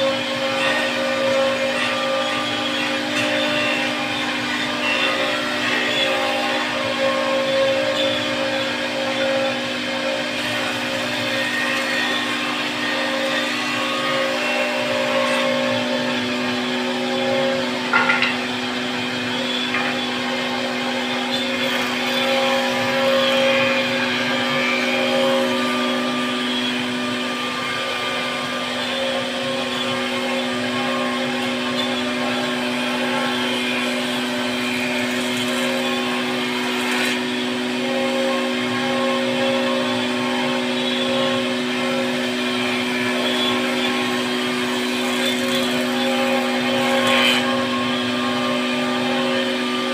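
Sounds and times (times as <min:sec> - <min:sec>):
router spindle motor whine: 0:00.0 - 0:49.9.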